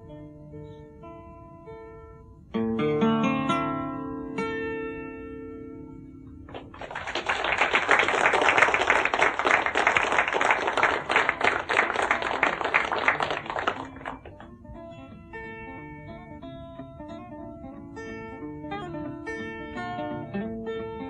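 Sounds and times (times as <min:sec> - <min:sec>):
plucked guitar notes: 0:00.0 - 0:06.7, 0:13.6 - 0:21.0
audience applauding: 0:06.5 - 0:14.6.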